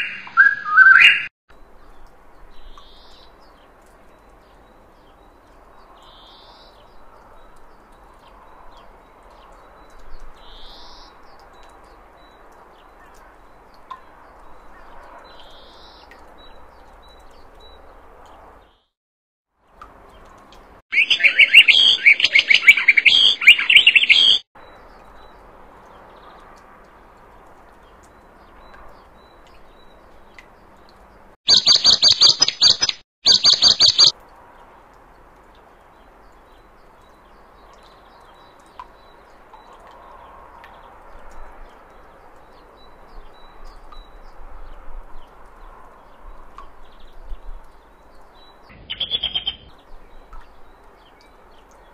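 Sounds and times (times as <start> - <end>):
bird rapid chirping: 0.0 - 1.3, 20.9 - 24.4, 31.5 - 34.1, 48.7 - 49.8
high rapid bird trilling: 0.0 - 1.3, 20.9 - 24.4, 31.5 - 34.1, 48.7 - 49.8.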